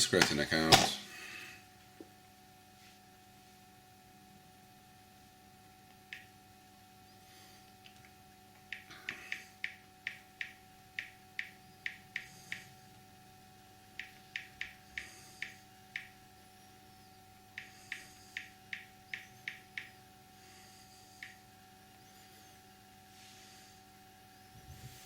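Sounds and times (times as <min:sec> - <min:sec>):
on-screen keyboard clicks: 0:17.6 - 0:20.0.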